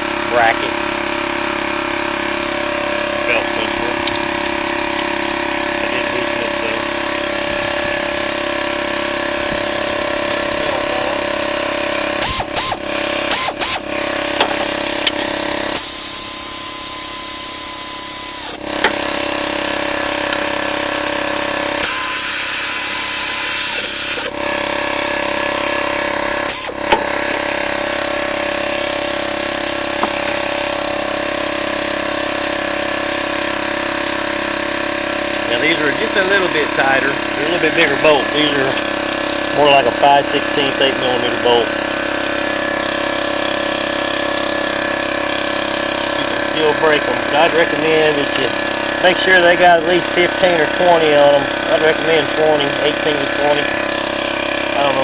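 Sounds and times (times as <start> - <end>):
steady mechanical hum: 0.0 - 55.0
power tool driving bolts: 11.3 - 24.9, 25.5 - 54.9.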